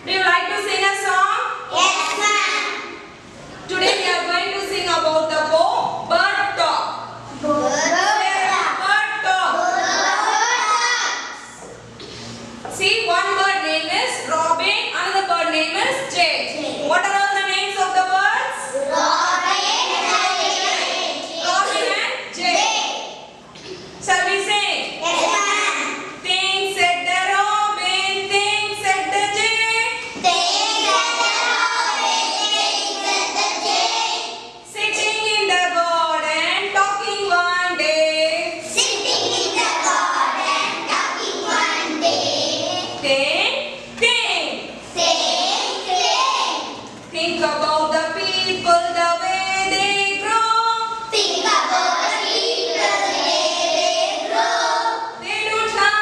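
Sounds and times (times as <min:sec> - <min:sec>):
young children singing: 0:18.7 - 0:21.9, 0:30.2 - 0:34.5, 0:38.8 - 0:43.0, 0:44.9 - 0:46.8, 0:51.1 - 0:55.2.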